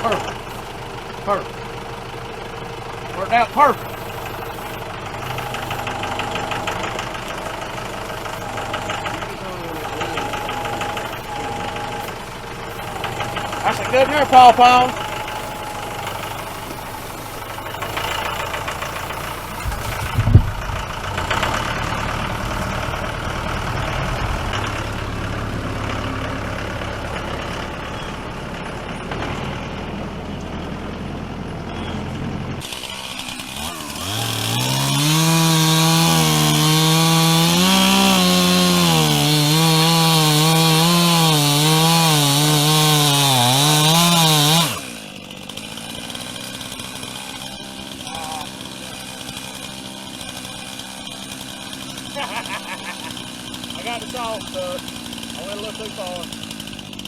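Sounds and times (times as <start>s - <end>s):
low engine hum: 0.0s - 36.0s
chainsaw cutting wood: 0.0s - 57.0s.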